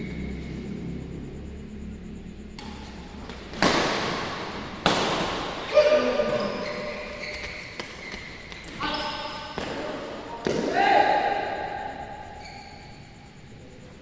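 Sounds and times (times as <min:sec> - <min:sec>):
racket hitting shuttlecock: 0:02.6 - 0:11.4.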